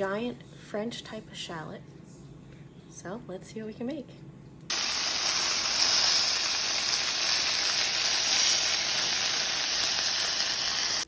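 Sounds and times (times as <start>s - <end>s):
food sizzling in a hot pan: 4.7s - 11.0s.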